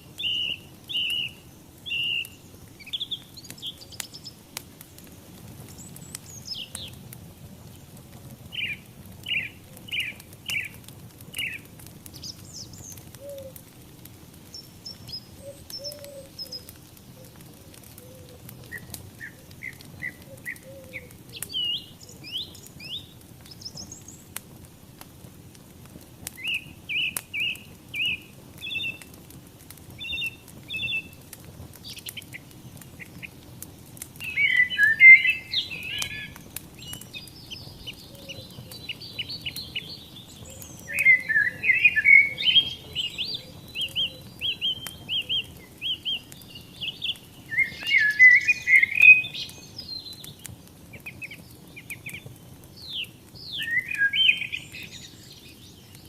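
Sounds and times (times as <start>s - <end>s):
wood fire rumbling and crackling: 0.0s - 56.0s
birds chirping: 0.1s - 13.8s, 14.4s - 24.4s, 26.2s - 29.2s, 29.9s - 56.0s
bird trills: 34.3s - 37.1s, 37.9s - 46.2s.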